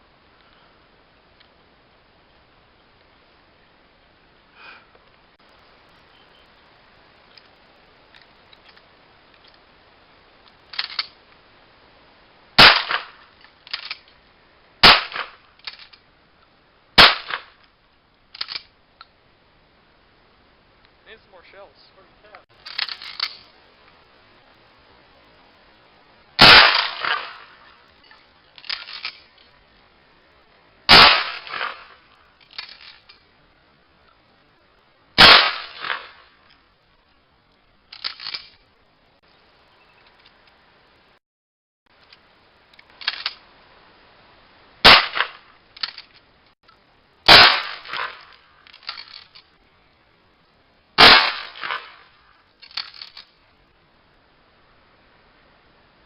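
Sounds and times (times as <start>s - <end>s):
shotgun pump racking clack: 10.7s - 11.1s, 18.4s - 18.7s, 22.6s - 23.5s, 28.6s - 29.3s, 37.9s - 38.6s, 42.8s - 43.4s, 48.0s - 49.4s
shotgun shots: 12.6s - 13.2s, 14.8s - 15.4s, 17.0s - 17.6s, 26.4s - 27.8s, 30.9s - 32.0s, 35.2s - 36.3s, 44.8s - 45.5s, 47.3s - 48.4s, 51.0s - 52.1s
shotgun pump clacks: 18.4s - 18.7s, 42.8s - 43.4s.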